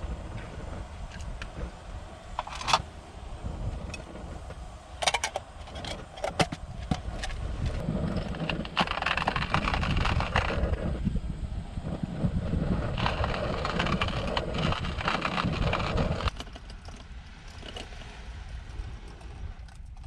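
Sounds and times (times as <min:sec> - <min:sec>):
rustling hiss: 0:00.0 - 0:20.0
steady low rumble: 0:00.0 - 0:20.0
objects being handled: 0:02.3 - 0:02.9.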